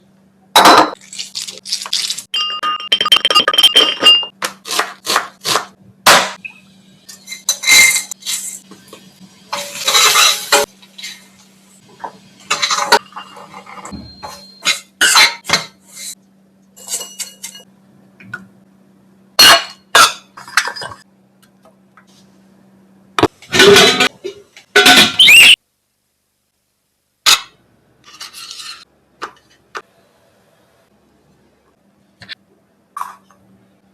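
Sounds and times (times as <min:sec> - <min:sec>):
metal utensils clinking on pans: 0:09.5 - 0:11.2, 0:12.5 - 0:15.8, 0:16.8 - 0:17.7, 0:23.5 - 0:25.2.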